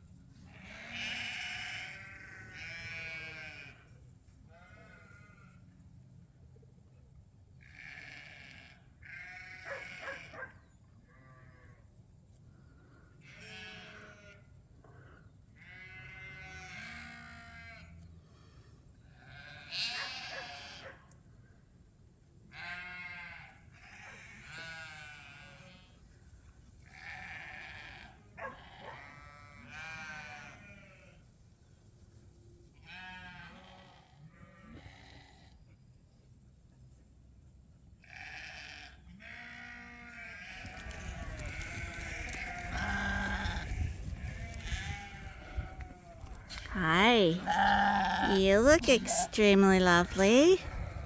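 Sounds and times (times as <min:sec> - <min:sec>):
lambs bleating: 0:00.5 - 0:03.8, 0:04.6 - 0:05.5, 0:07.8 - 0:10.3, 0:13.2 - 0:14.4, 0:15.6 - 0:17.8, 0:19.3 - 0:20.8, 0:22.5 - 0:25.9, 0:26.9 - 0:31.2, 0:32.9 - 0:35.2, 0:38.1 - 0:43.8, 0:44.4 - 0:49.0.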